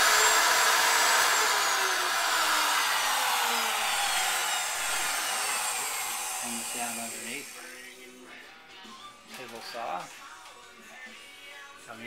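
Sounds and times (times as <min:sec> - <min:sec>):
router motor winding down: 0:00.0 - 0:07.7.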